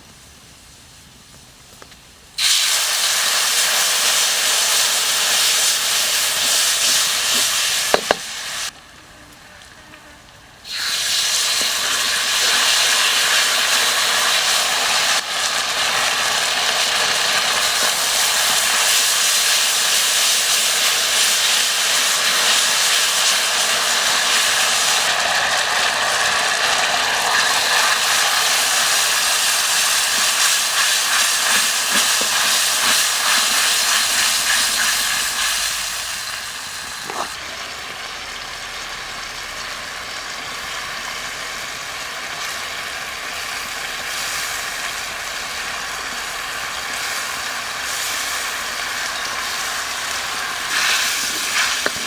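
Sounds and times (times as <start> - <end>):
food sizzling over a fire: 0.0 - 52.0.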